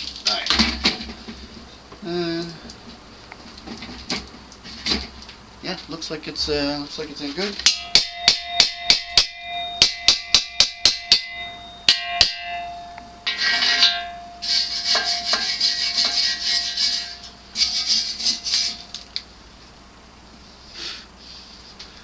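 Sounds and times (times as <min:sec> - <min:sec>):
hammer striking steel: 0:07.6 - 0:18.9
metal scraping on metal: 0:11.2 - 0:19.1.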